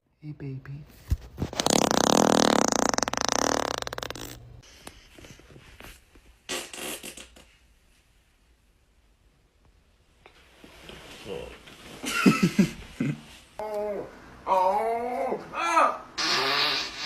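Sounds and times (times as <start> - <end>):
person farting: 1.4 - 4.6, 6.5 - 7.6, 16.2 - 17.0.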